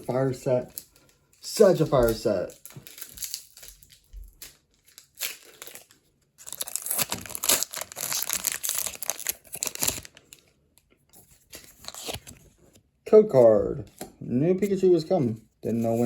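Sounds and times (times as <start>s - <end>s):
foil wrapper tearing and crinkling: 0.0s - 10.4s, 11.5s - 12.4s.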